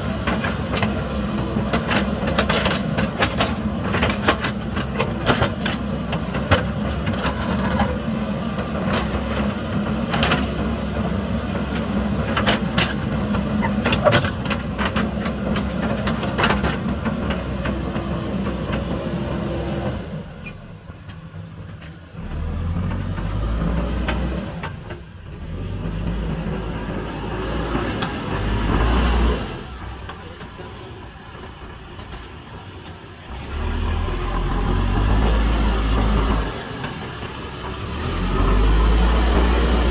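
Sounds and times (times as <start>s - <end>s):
diesel engine working hard: 0.0s - 39.9s.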